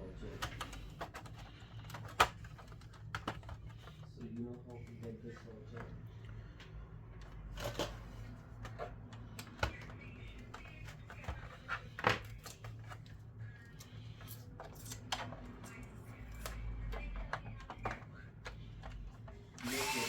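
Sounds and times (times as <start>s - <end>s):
tools and plastic parts clicking: 0.2s - 5.0s.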